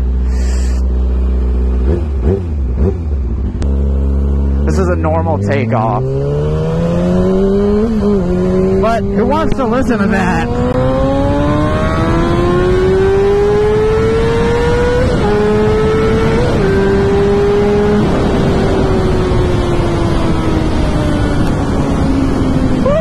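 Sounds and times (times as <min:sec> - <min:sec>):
motorcycle engine revving: 0:00.0 - 0:23.0
wind rush on microphone: 0:07.0 - 0:23.0.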